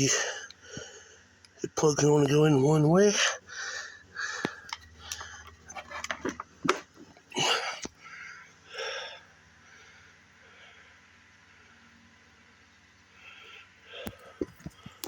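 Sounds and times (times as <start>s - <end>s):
handling rustles: 4.4s - 7.9s.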